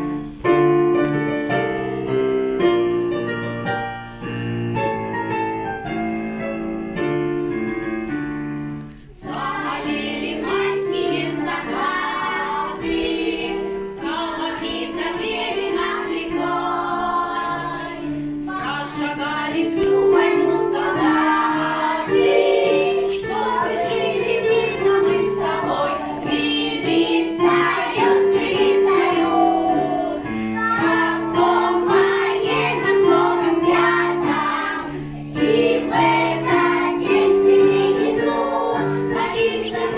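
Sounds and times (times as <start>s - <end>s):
instrumental accompaniment: 0.0s - 39.9s
children singing: 9.1s - 39.9s.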